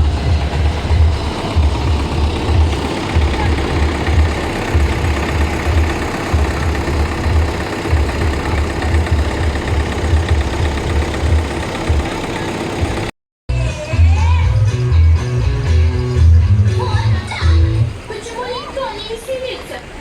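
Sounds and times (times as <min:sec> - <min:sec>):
heavy bass beat: 0:00.0 - 0:17.9
loud music through loudspeakers: 0:13.5 - 0:17.9.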